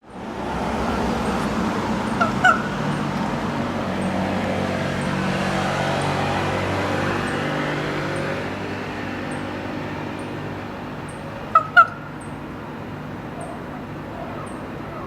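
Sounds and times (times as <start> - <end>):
low engine hum: 0.1 - 15.0
raven squawks: 2.1 - 3.2, 11.1 - 15.0.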